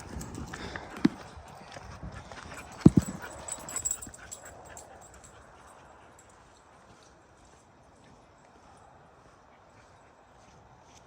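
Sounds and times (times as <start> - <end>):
footsteps on dirt trail: 0.0 - 4.4.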